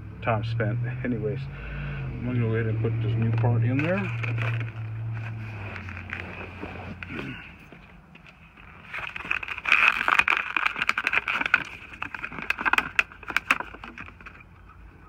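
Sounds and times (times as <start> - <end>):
rustling: 3.0 - 14.5
plastic clicks: 9.1 - 14.5.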